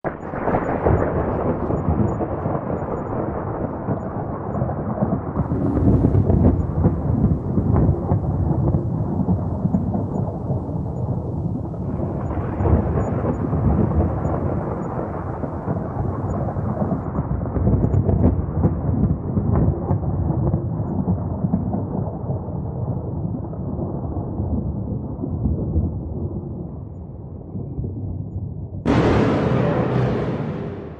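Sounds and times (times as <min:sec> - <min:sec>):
rumbling thunder: 0:00.1 - 0:22.0, 0:28.9 - 0:30.9
rain hissing: 0:05.4 - 0:10.0.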